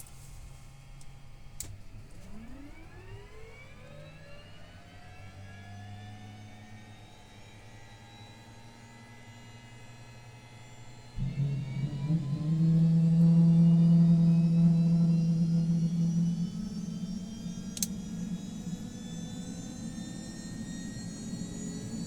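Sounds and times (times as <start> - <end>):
click: 1.0 - 2.3, 17.7 - 18.0
turbine whine rising: 11.0 - 22.0
low hum: 11.2 - 22.0.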